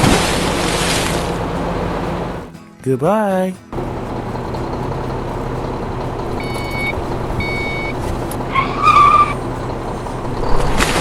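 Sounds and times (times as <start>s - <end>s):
background rumble and hiss: 0.0s - 2.5s
reversing beeper beeps: 6.4s - 8.0s.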